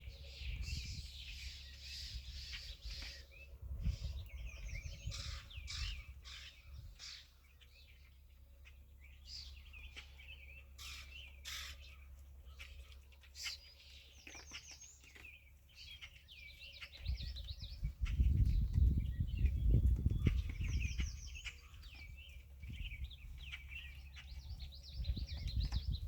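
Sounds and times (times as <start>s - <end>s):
low wind-like rumble: 0.0s - 8.0s, 17.0s - 26.0s
songbirds chirping: 0.0s - 26.0s.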